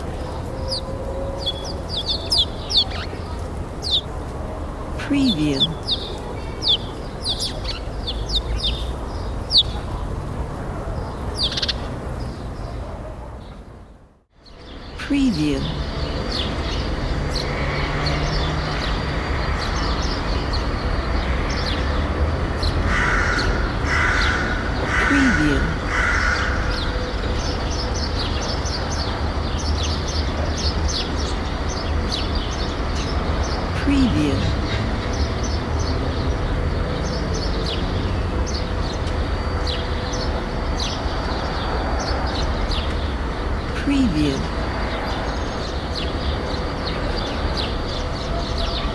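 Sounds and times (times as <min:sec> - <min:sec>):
distant traffic rumble: 0:00.0 - 0:48.9
small birds chirping: 0:00.0 - 0:48.9
small bird chirping: 0:00.7 - 0:04.1, 0:05.5 - 0:09.8
crow cawing: 0:22.8 - 0:26.9.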